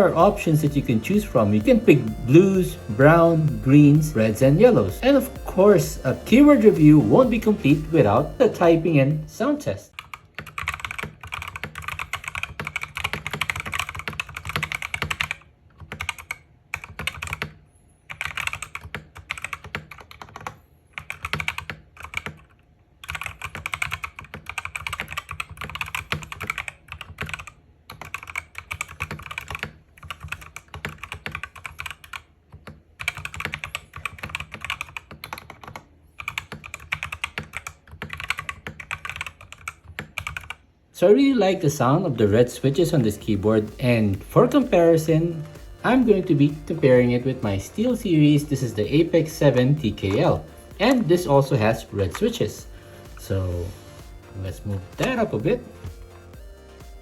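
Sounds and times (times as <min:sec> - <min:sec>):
fast typing on mechanical keyboard: 0:10.0 - 0:40.6, 0:47.1 - 0:52.6.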